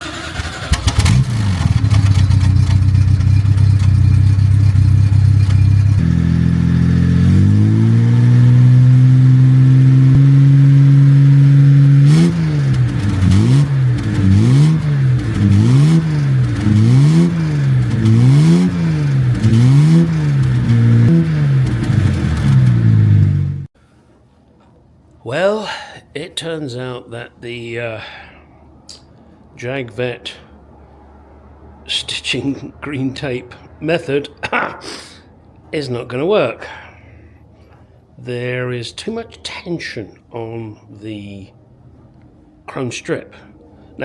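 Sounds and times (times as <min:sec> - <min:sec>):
car engine idling and revving: 0:00.0 - 0:23.7.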